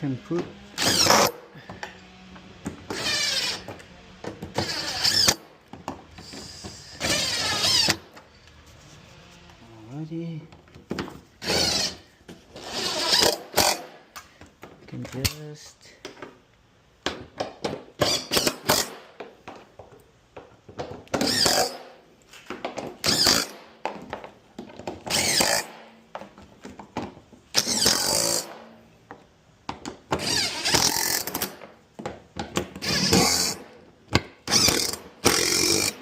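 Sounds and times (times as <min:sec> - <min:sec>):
power drill bursts: 0:00.7 - 0:01.4, 0:02.9 - 0:03.7, 0:04.6 - 0:05.4, 0:06.8 - 0:08.0, 0:11.4 - 0:12.0, 0:12.6 - 0:13.8, 0:25.1 - 0:25.8, 0:27.6 - 0:28.5, 0:30.2 - 0:31.5, 0:32.8 - 0:33.6, 0:34.5 - 0:36.0.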